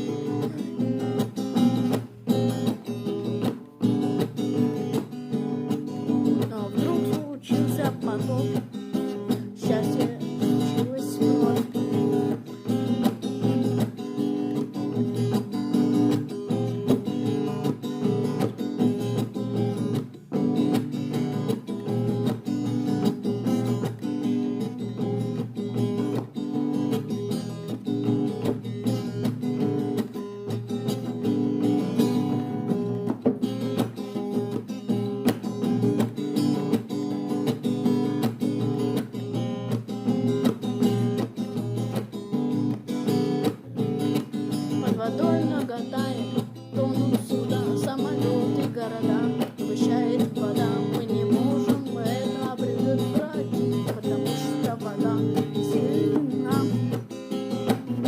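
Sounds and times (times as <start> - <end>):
acoustic guitar strumming: 0.0 - 58.0.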